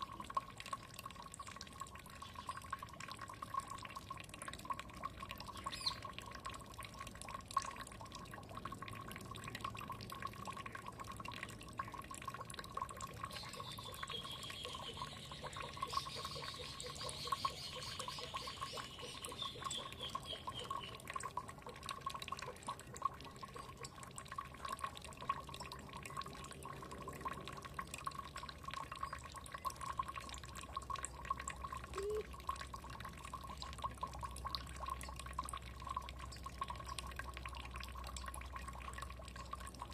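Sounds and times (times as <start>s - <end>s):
water dripping and trickling: 0.0s - 39.9s
bird singing high chirps: 5.6s - 6.0s, 13.3s - 21.0s, 32.0s - 32.2s.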